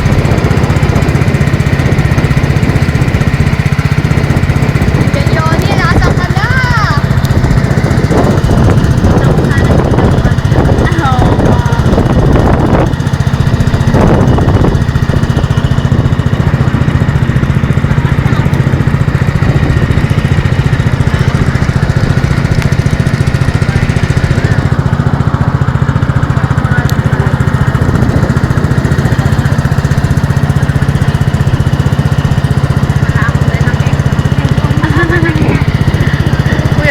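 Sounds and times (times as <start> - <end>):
small engine running steadily: 0.0 - 36.9.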